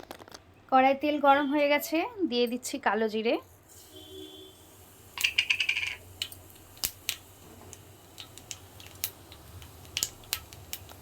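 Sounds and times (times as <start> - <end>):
seeds crackling in hot oil: 3.5 - 11.0.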